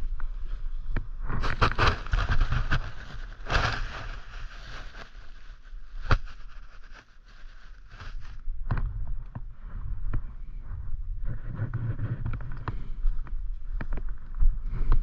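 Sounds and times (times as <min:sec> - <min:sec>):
scraping and rustling: 0:01.3 - 0:08.4.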